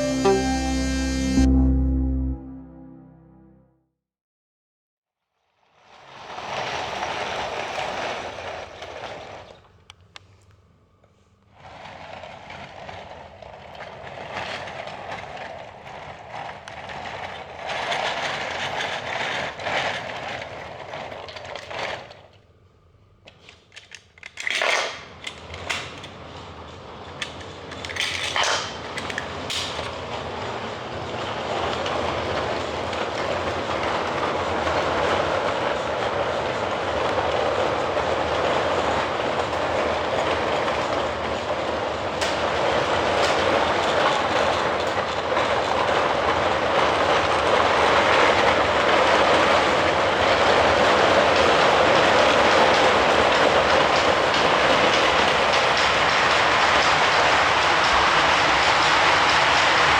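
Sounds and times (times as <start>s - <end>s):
toy train rattling on plastic track: 11.6s - 22.5s, 23.3s - 59.9s
sharp clacks: 52.6s - 59.9s.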